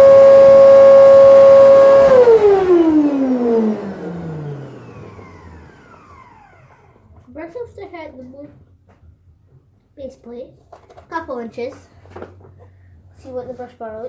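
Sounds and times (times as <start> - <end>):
vacuum cleaner motor whine: 0.0 - 7.3.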